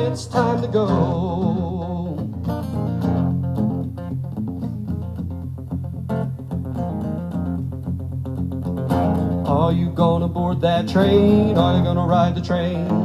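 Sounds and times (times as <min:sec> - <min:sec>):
plucked and strummed guitar: 0:00.0 - 0:13.0
steady bass line: 0:00.0 - 0:13.0.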